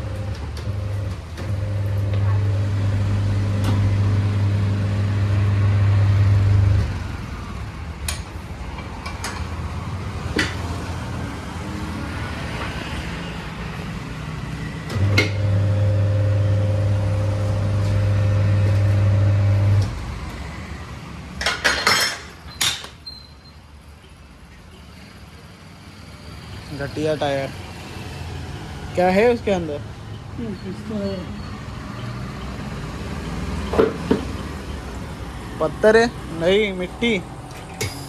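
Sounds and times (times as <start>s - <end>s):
electric motor humming: 0.0s - 7.3s, 14.9s - 20.0s
metal tools clanking on rim: 10.3s - 10.8s, 21.4s - 23.2s.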